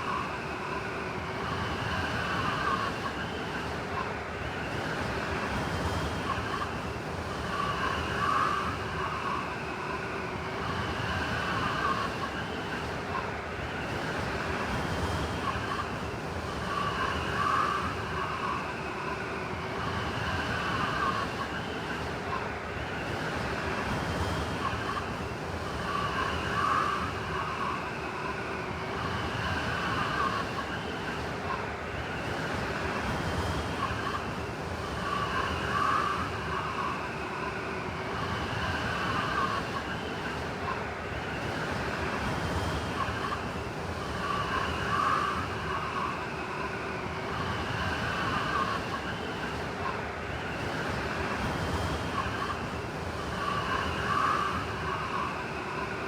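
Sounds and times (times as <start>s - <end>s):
blizzard wind gusting: 15.4s - 56.0s
wavering wind whistle: 23.6s - 56.0s.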